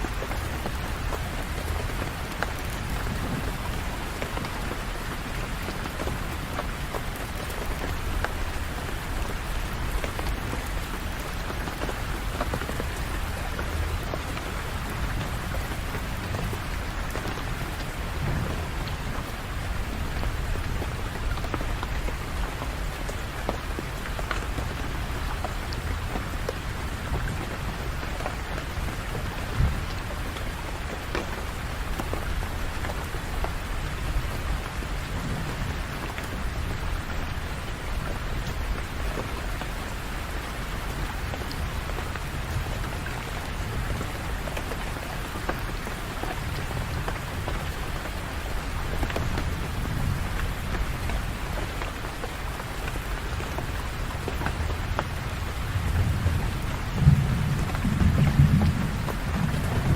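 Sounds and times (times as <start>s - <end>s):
steady rain falling: 0.0s - 59.9s
loud raindrop strike: 18.1s - 19.2s.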